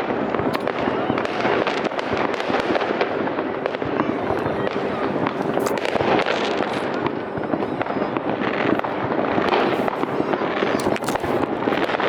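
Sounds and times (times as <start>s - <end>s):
fireworks crackling and banging: 0.0s - 12.0s.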